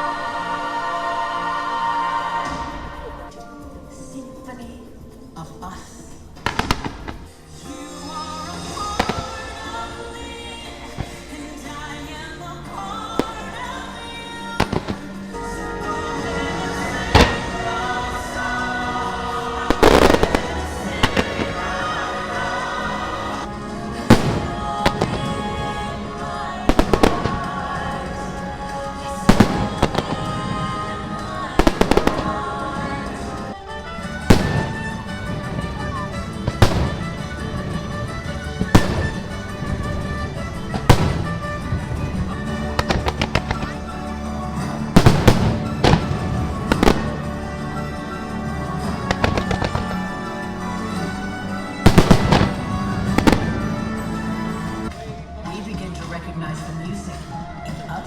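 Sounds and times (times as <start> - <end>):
show music: 0.0 - 58.0
fireworks bangs: 6.4 - 7.4, 8.4 - 11.8, 13.2 - 15.5, 16.1 - 55.2
smaller firework pops: 34.2 - 43.8, 51.8 - 53.7.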